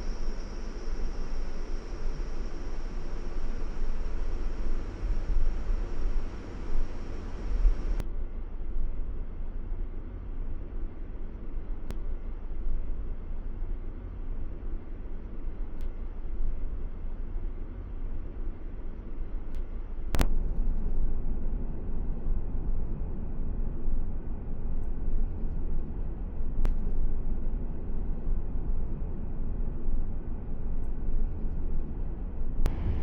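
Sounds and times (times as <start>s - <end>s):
tyres and road noise rumbling: 32.7s - 33.0s.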